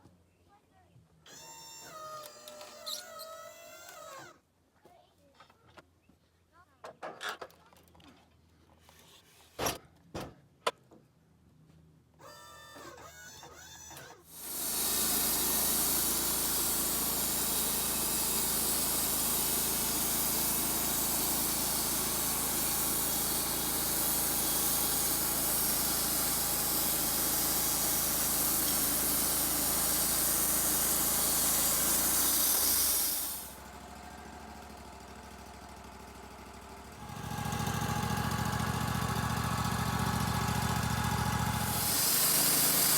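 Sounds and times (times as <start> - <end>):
band saw cutting wood: 13.4 - 33.6, 37.0 - 42.9.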